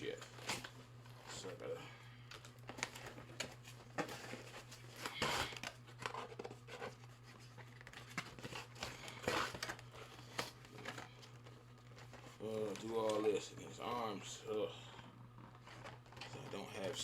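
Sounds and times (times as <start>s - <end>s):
packaging crinkling and rustling: 0.0s - 17.0s
packaging tearing: 2.3s - 13.2s.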